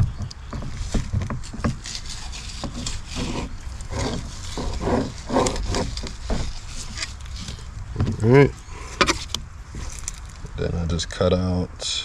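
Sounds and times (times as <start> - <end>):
small knocks and rustles: 0.0 - 10.6
knife cutting and scraping fish: 0.6 - 7.8.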